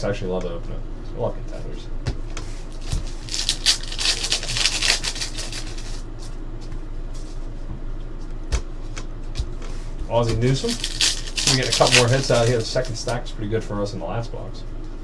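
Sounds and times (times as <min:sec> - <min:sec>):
card pack wrapper rustling: 0:02.8 - 0:06.1, 0:10.5 - 0:13.2
cards clicking: 0:10.6 - 0:13.2.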